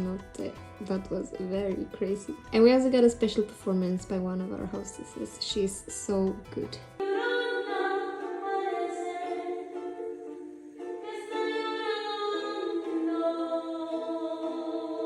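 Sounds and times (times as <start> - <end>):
woman singing long held notes: 7.0 - 15.0.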